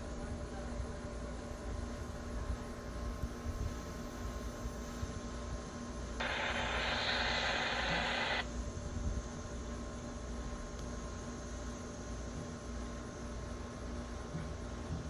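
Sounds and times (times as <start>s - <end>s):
faint hum: 6.2s - 8.5s
static hiss: 6.2s - 8.5s.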